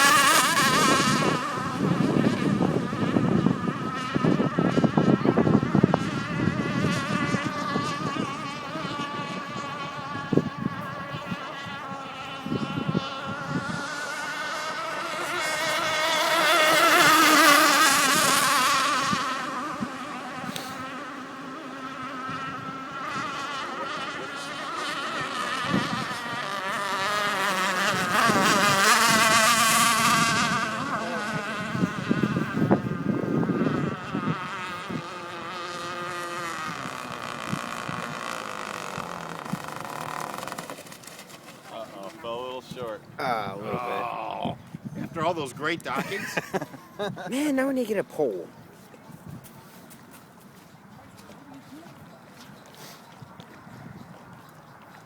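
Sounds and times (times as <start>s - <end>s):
model boat high-pitched whine: 0.0s - 43.0s.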